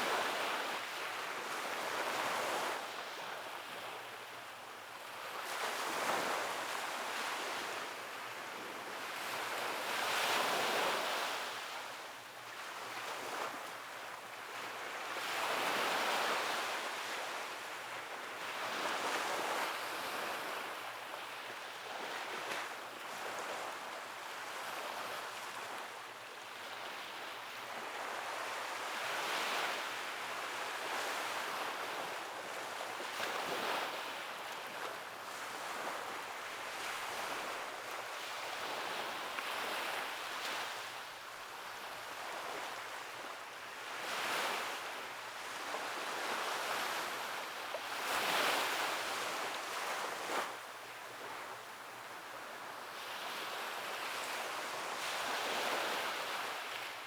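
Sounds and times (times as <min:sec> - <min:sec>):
sea waves breaking on shore: 0:43.9 - 0:51.6.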